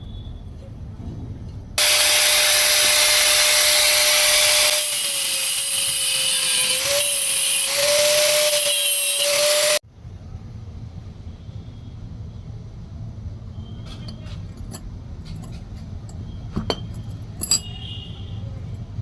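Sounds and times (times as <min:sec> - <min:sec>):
power tool whining on metal: 0:01.8 - 0:09.8.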